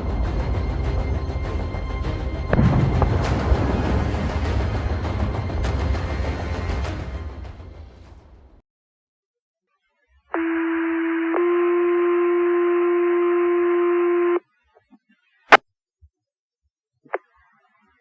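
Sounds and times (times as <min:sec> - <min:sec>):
two-tone radio page: 0:10.3 - 0:15.6.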